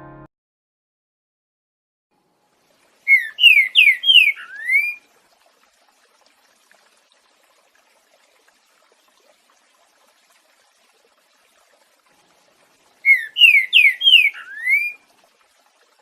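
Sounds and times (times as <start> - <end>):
bird whistling song: 3.1 - 5.0, 13.0 - 15.0.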